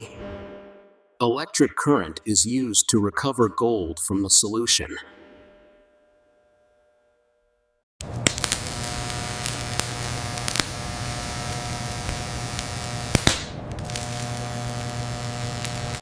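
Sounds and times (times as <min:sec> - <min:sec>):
electrical hum and buzz: 0:05.4 - 0:16.0
sharp crackling clicks: 0:08.0 - 0:16.0.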